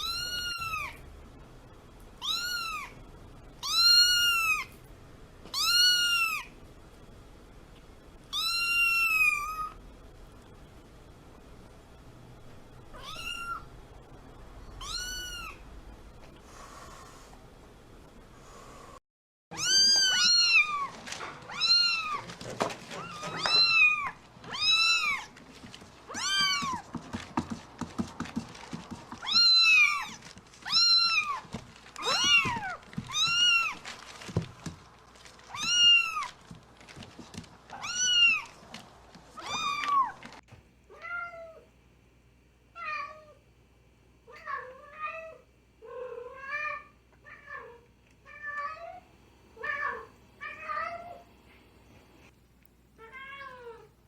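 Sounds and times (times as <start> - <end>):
kitten meowing high-pitched: 0.0 - 1.0, 2.2 - 2.9, 19.5 - 20.9
cat meowing softly: 19.5 - 20.9.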